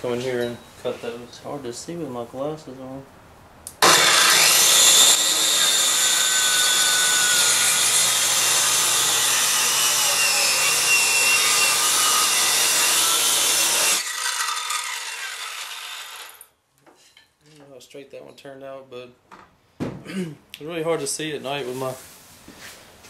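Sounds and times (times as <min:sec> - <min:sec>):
electric saw cutting wood: 0:03.8 - 0:16.5.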